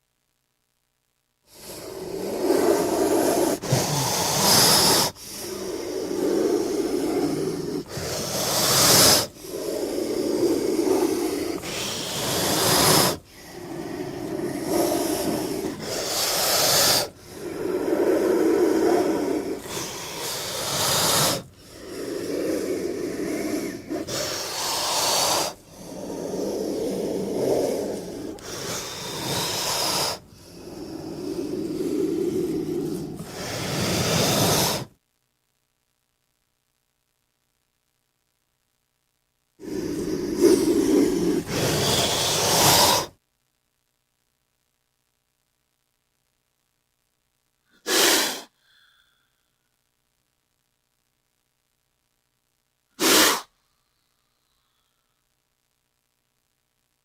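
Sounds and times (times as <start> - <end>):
snake hissing: 1.5 - 34.9, 39.6 - 43.2, 47.8 - 49.2, 53.0 - 53.5.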